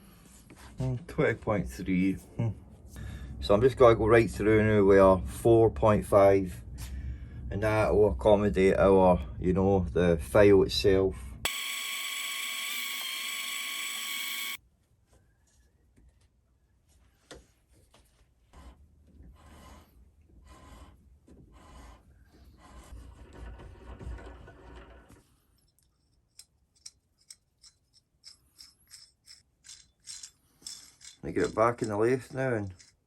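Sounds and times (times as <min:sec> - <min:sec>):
drill bit scraping whirr: 0:11.4 - 0:14.6.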